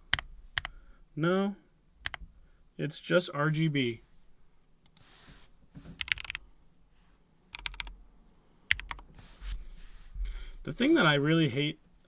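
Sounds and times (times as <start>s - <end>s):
mechanical keyboard clacking: 6.0s - 6.4s, 7.5s - 7.9s, 8.7s - 9.1s.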